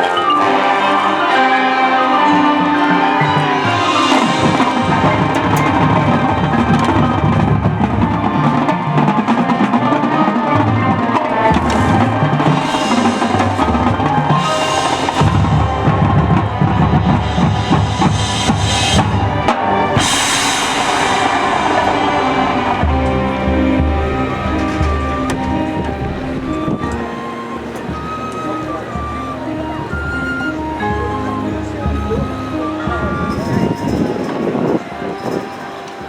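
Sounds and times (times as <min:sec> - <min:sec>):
marching band drums: 0:00.1 - 0:34.9
cymbal crashes: 0:03.2 - 0:07.7, 0:11.4 - 0:27.1.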